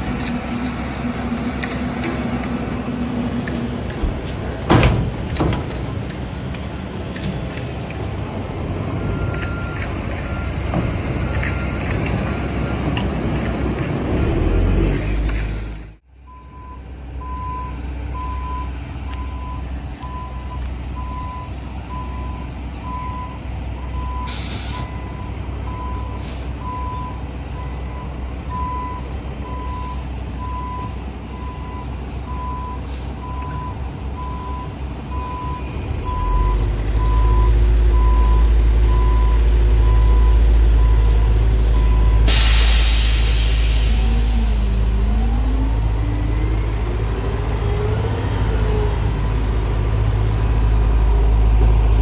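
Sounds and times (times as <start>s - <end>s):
truck backup alarm beeping: 0.0s - 15.6s, 16.2s - 52.0s
diesel engine: 0.0s - 52.0s
air hissing: 3.6s - 6.5s, 42.2s - 46.4s.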